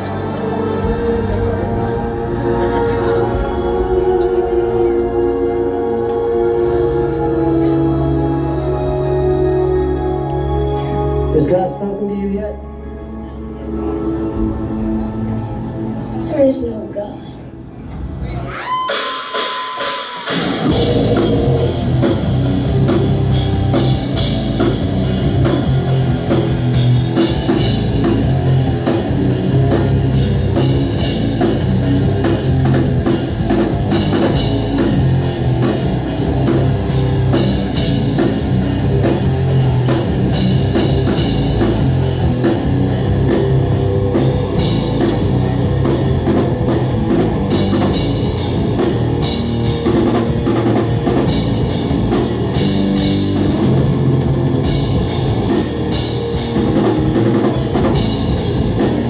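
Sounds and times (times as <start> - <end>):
heavy metal band playing live: 18.4 - 59.0.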